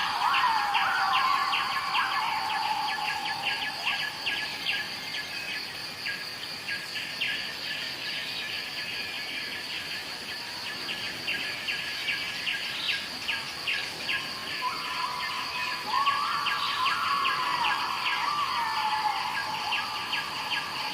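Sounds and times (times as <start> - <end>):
wavering held call: 0.0 - 4.7
bird chirps: 0.0 - 5.5
insect drone: 0.0 - 20.9.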